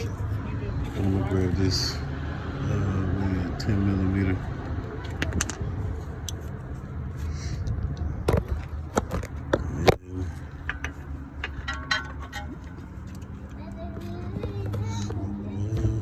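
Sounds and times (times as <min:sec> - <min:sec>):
metal tools clinking and scraping: 0:05.0 - 0:05.6, 0:10.4 - 0:13.5.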